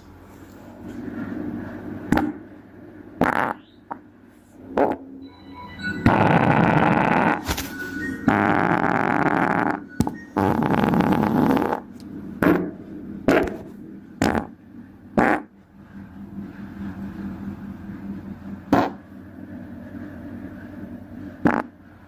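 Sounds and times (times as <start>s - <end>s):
farts: 3.2s - 3.7s, 6.1s - 7.5s, 8.3s - 9.8s, 10.4s - 12.7s, 13.3s - 14.6s, 15.2s - 15.5s, 18.7s - 19.0s, 21.4s - 21.8s.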